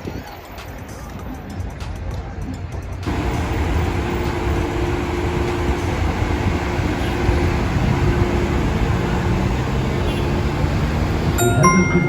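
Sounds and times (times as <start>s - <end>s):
metro train rumbling: 3.0s - 12.0s.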